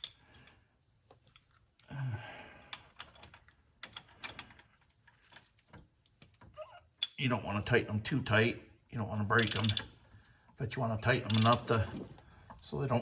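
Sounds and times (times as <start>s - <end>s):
person sighing: 1.9s - 2.6s
socket wrench ratcheting: 9.4s - 9.9s, 11.3s - 11.7s.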